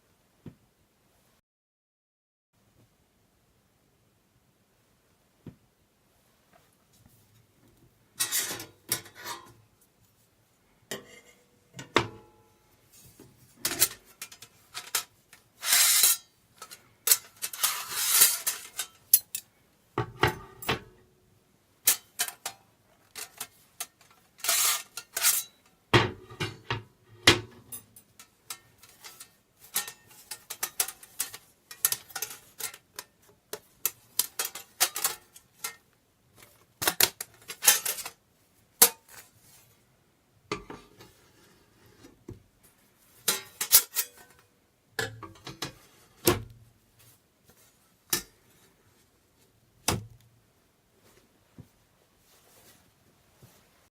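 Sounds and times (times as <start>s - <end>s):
metal parts clinking and scraping: 13.0s - 19.5s, 21.9s - 25.7s, 27.6s - 35.8s, 36.4s - 38.2s, 43.2s - 44.4s.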